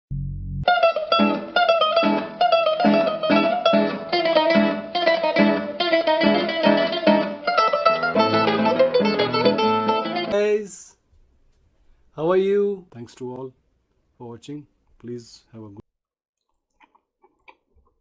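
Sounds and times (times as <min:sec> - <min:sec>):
plucked string instrumental tune: 0:00.1 - 0:10.4.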